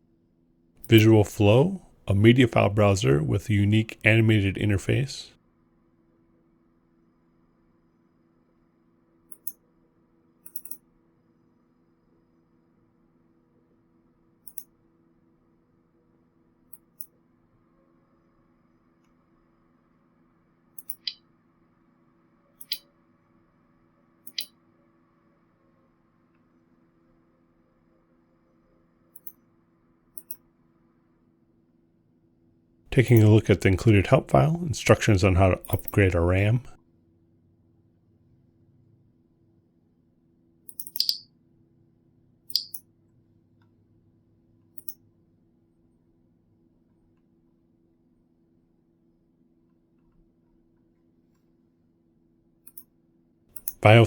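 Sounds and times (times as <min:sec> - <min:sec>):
faint electrical hum: 0:00.0 - 0:54.0
computer mouse clicks: 0:10.4 - 0:10.8, 0:14.4 - 0:14.7, 0:20.8 - 0:21.2, 0:22.6 - 0:22.8, 0:24.2 - 0:24.6, 0:29.1 - 0:29.4, 0:30.2 - 0:30.4, 0:40.7 - 0:41.2, 0:42.5 - 0:42.8, 0:44.8 - 0:45.0, 0:52.7 - 0:52.9
mouse button double clicks: 0:40.8 - 0:41.2, 0:42.5 - 0:42.8.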